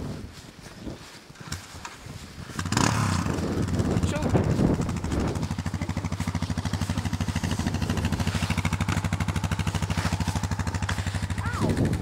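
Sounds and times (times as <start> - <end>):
engine idling: 2.7 - 12.0.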